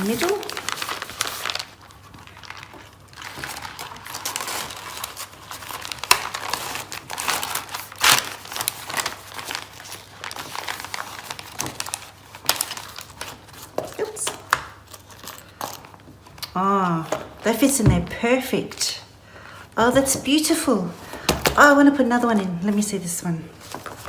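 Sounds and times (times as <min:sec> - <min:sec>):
paper and leather rustling: 0:00.0 - 0:16.3, 0:23.6 - 0:24.0
paper crackles: 0:00.0 - 0:17.4, 0:22.0 - 0:24.0.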